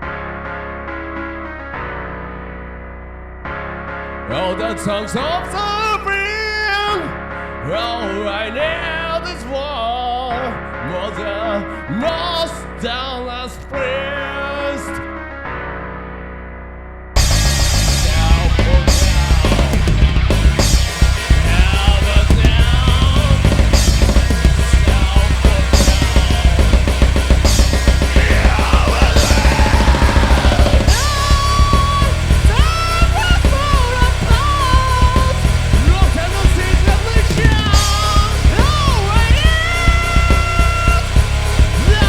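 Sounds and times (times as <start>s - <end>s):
bending lead guitar: 17.2s - 42.0s
fast driving drums: 17.2s - 42.0s
instrumental rock music: 17.2s - 42.0s.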